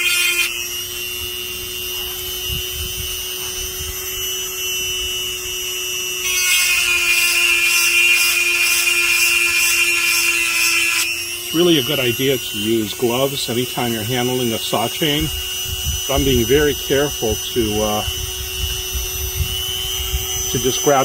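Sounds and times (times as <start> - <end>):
grinding stone on chain teeth: 0.0 - 0.8, 6.2 - 21.0
motor whine: 0.0 - 21.0.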